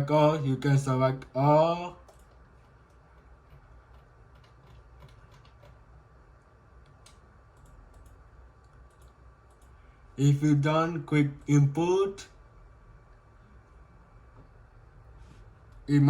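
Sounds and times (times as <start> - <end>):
low room hum: 0.0 - 16.0
computer mouse clicking: 2.0 - 5.8, 6.8 - 9.8.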